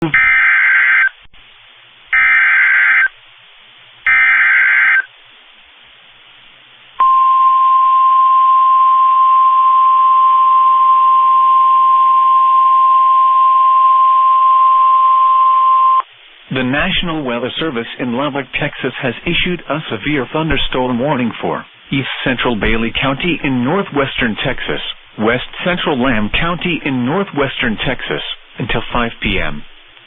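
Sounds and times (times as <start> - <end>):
single-pitch attention alarm: 7.0 - 16.0.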